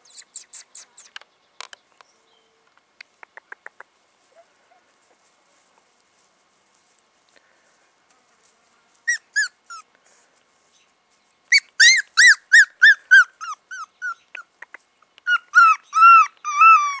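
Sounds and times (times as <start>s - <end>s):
puppy whimpering and crying: 9.1s - 9.9s, 11.5s - 14.5s, 15.2s - 17.0s.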